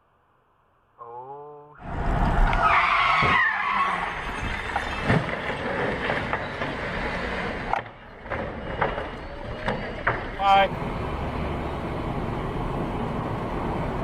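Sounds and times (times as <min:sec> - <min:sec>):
road noise: 0:00.0 - 0:14.0
car tyres squealing: 0:01.8 - 0:10.6.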